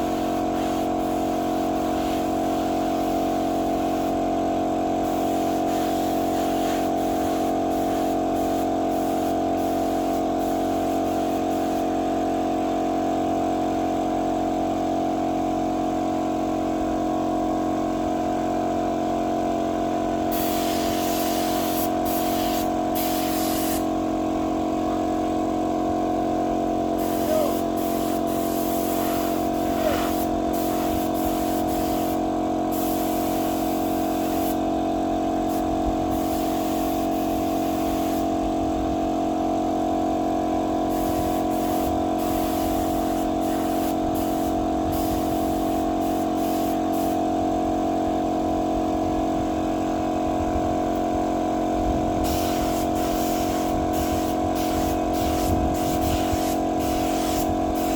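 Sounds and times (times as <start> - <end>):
spray gun hissing: 0.0 - 4.2, 5.0 - 11.9, 20.3 - 23.9, 27.0 - 34.6, 35.5 - 38.3, 40.9 - 47.2, 52.2 - 57.9
air compressor humming: 0.0 - 14.3, 16.9 - 57.9.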